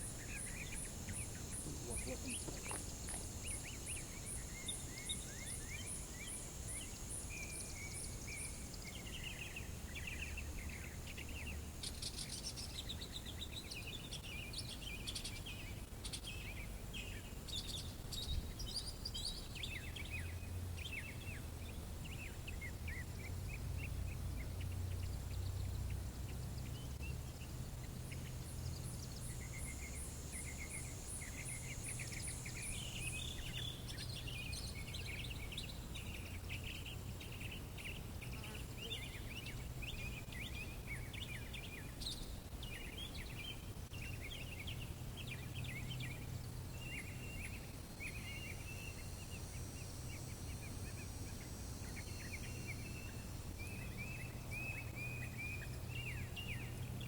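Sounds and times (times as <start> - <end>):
insect trilling: 0.0 - 8.7
birds chirping: 0.0 - 57.0.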